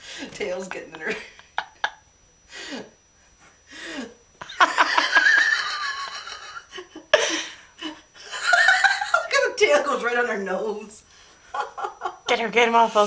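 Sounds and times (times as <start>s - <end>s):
person laughing: 0.7s - 2.0s, 3.8s - 9.3s, 11.6s - 12.3s.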